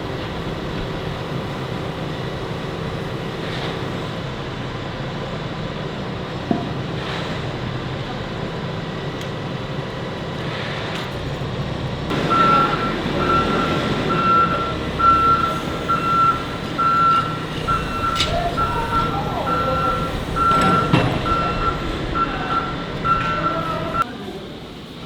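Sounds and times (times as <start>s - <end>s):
diesel engine running: 0.0s - 25.0s
reversing alarm beeping: 12.1s - 24.0s.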